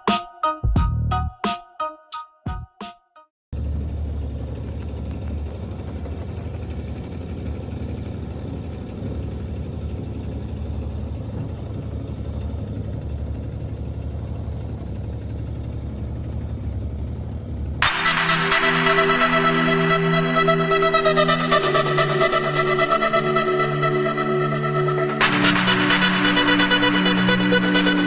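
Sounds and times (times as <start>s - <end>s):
engine running steadily: 3.6s - 28.0s.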